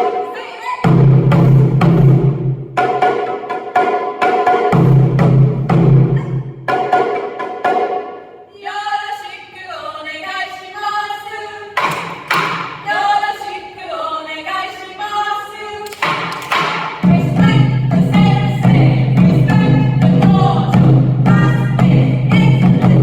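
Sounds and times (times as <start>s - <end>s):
voices singing together: 0.0s - 1.0s, 8.5s - 23.0s
taiko drum strikes: 0.9s - 7.8s.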